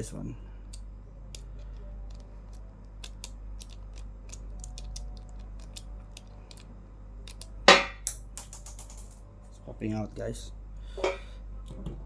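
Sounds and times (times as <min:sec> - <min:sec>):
steady low hum: 0:00.0 - 0:12.0
ratchet clicking: 0:07.3 - 0:09.2.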